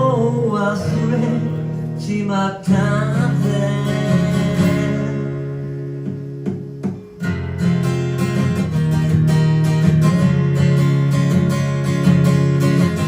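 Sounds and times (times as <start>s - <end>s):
person singing: 0.0s - 5.6s
acoustic guitar strumming: 0.0s - 13.0s.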